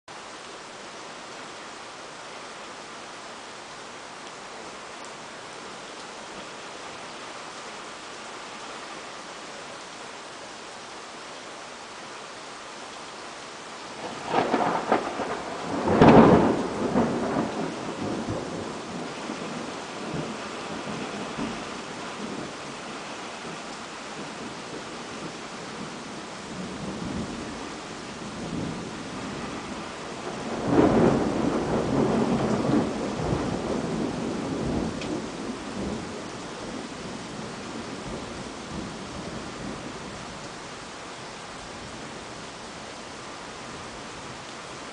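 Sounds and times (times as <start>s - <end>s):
steady rain: 0.0s - 44.9s
thunder clap and rumble: 14.0s - 22.8s, 23.4s - 27.6s, 28.2s - 40.0s.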